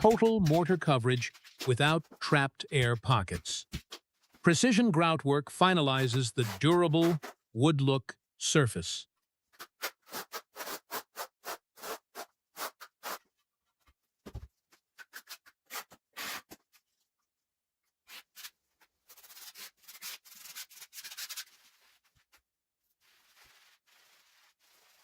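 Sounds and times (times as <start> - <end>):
tool scraping across tiles: 6.0 - 7.4.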